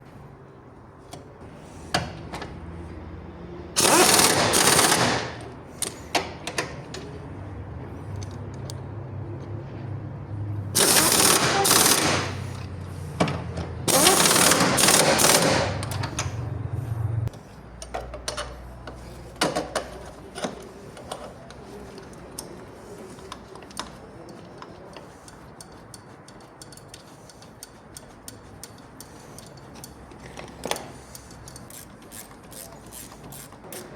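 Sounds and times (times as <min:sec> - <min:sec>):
impact wrench rattling: 0:03.8 - 0:06.0, 0:10.8 - 0:12.7, 0:13.9 - 0:16.4, 0:25.0 - 0:33.9
tools clicking and knocking: 0:03.8 - 0:07.2, 0:08.1 - 0:08.9, 0:10.8 - 0:16.4, 0:17.7 - 0:22.6, 0:23.2 - 0:33.9.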